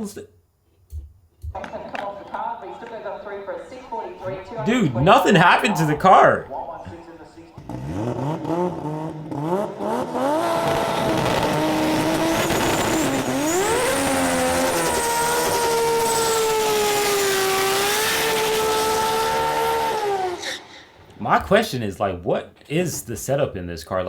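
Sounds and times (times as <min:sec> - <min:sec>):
drag car engine revving: 0:04.3 - 0:21.2.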